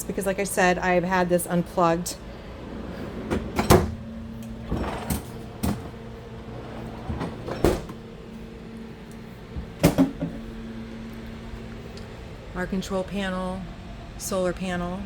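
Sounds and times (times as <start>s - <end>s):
air conditioner humming: 0.0s - 15.0s
cabinet doors knocking and clunking: 3.1s - 4.0s.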